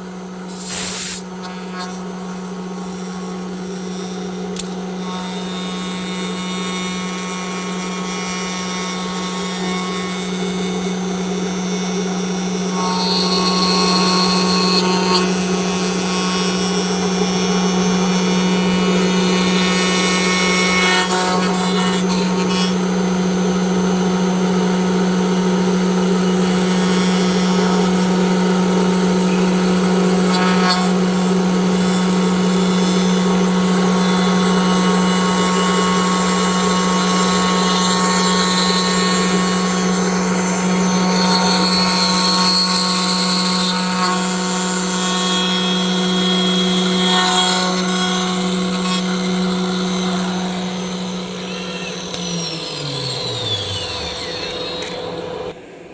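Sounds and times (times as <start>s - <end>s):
router cutting wood: 0.0s - 55.9s
router spindle humming: 0.0s - 55.9s.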